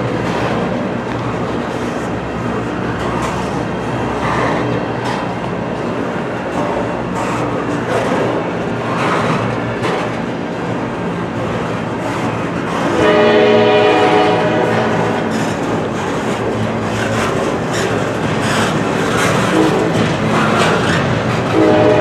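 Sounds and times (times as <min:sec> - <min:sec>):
train wheels clattering on rails: 0:00.0 - 0:22.0
locomotive air horn: 0:12.9 - 0:15.4, 0:19.5 - 0:20.0, 0:21.5 - 0:22.0.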